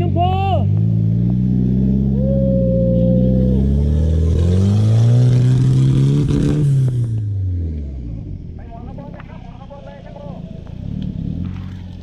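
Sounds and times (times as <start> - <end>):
car engine revving under load: 0.6 - 9.4.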